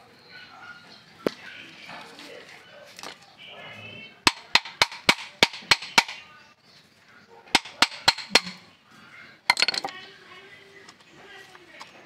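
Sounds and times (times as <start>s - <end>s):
sharp metallic taps: 4.3s - 6.2s, 7.5s - 8.7s.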